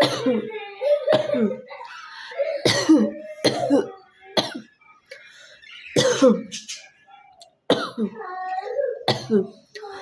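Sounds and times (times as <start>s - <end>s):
woman coughing: 0.0s - 0.5s, 1.1s - 1.7s, 2.5s - 4.7s, 6.0s - 6.5s, 7.7s - 8.1s, 9.1s - 9.6s.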